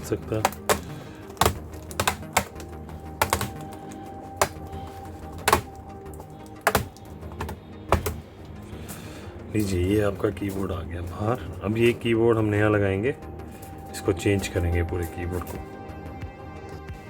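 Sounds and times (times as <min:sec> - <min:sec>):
plastic keyboard clicks and snaps: 0:00.0 - 0:08.2
background music: 0:00.0 - 0:17.0.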